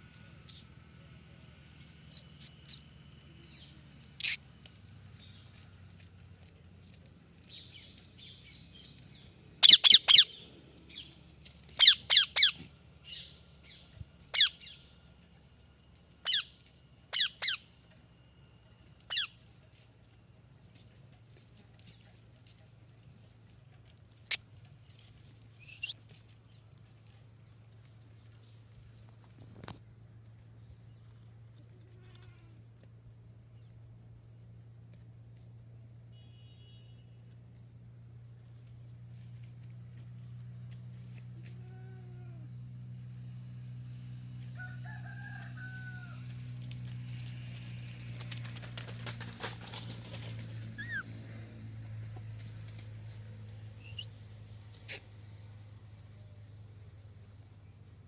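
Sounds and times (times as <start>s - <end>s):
steady low hum: 0.0s - 36.2s
parakeet chirp: 0.5s - 0.7s, 1.8s - 2.8s, 9.6s - 11.0s, 11.8s - 14.8s, 16.2s - 16.5s, 17.1s - 17.6s, 19.1s - 19.3s, 50.8s - 51.0s
parakeet falling chirp: 0.5s - 0.7s, 1.8s - 2.8s, 9.6s - 10.3s
rooster crowing: 44.4s - 46.6s
sharp clicks and rustles: 46.5s - 50.8s.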